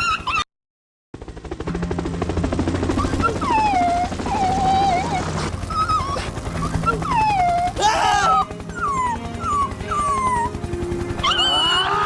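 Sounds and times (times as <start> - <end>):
dog whining: 2.9 - 10.6, 11.2 - 12.0.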